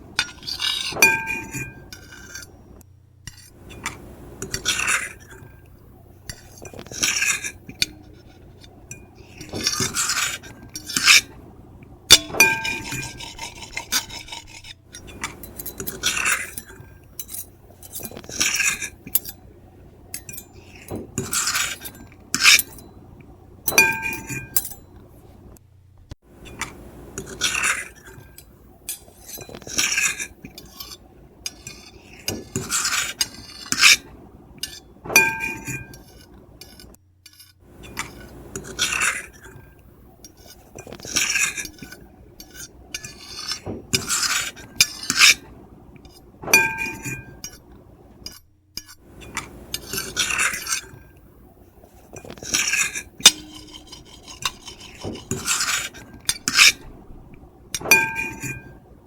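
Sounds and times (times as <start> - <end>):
plate clinking: 0.2 - 2.6, 12.1 - 19.5, 23.7 - 25.0, 34.6 - 36.2, 46.4 - 47.7, 52.1 - 56.9, 57.7 - 58.8
cutlery scraping a plate: 0.2 - 11.4, 12.1 - 19.5, 20.1 - 23.0, 23.7 - 25.0, 26.5 - 51.2, 51.8 - 57.0, 57.7 - 58.8.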